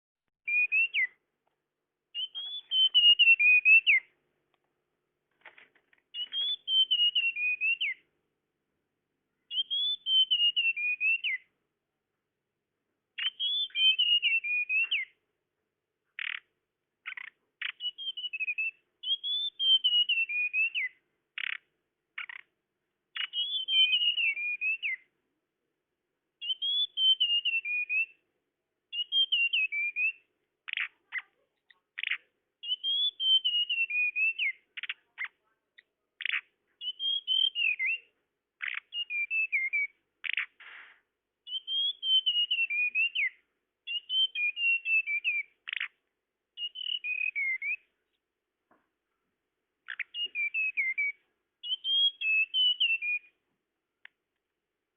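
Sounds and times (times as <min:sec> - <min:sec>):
whistled bird call: 0:00.4 - 0:01.2, 0:02.2 - 0:04.1, 0:06.1 - 0:08.0, 0:09.5 - 0:11.5, 0:13.2 - 0:15.2, 0:17.1 - 0:21.6, 0:23.2 - 0:25.1, 0:26.4 - 0:28.2, 0:28.9 - 0:30.9, 0:32.0 - 0:35.4, 0:36.2 - 0:40.6, 0:41.4 - 0:45.9, 0:46.6 - 0:47.9, 0:49.9 - 0:53.4.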